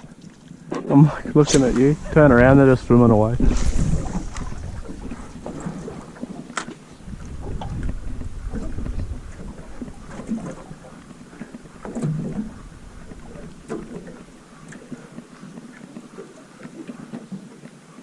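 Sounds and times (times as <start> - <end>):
water lapping against boat hull: 0.0 - 18.0
wind rumble on microphone: 1.0 - 15.2.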